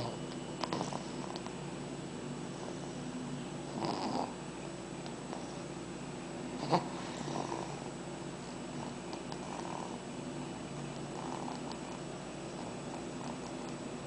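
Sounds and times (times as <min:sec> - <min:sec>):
snoring: 0:00.0 - 0:01.4, 0:03.7 - 0:04.4, 0:06.6 - 0:07.9, 0:08.8 - 0:10.0, 0:11.1 - 0:13.7.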